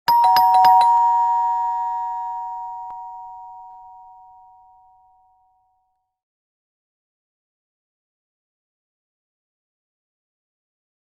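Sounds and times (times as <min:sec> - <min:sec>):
two-tone doorbell chime: 0:00.1 - 0:05.8.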